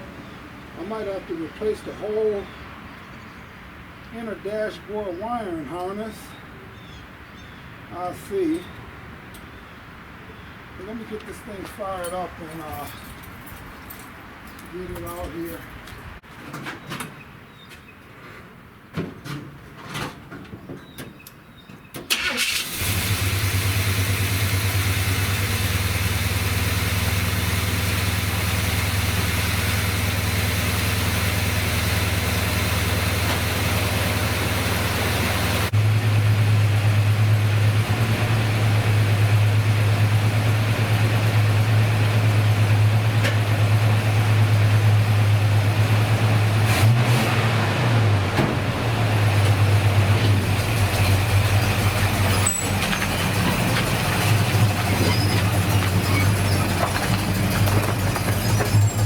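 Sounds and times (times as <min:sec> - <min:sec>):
car engine starting and idling: 0:22.0 - 0:59.0.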